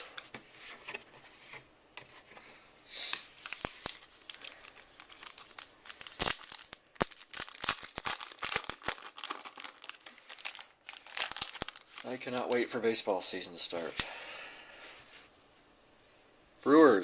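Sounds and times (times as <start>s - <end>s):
plastic wrapper crinkling and tearing: 3.3s - 12.7s.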